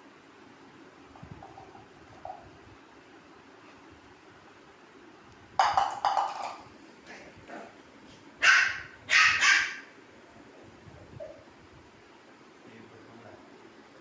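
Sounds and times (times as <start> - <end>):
puppy barking: 8.4 - 9.9.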